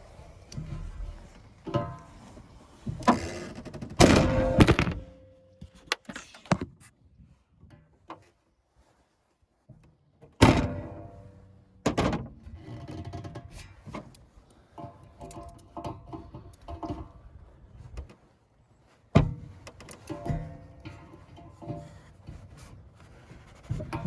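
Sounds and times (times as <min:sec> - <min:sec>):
metal tools knocking and clanking: 0:19.8 - 0:22.0.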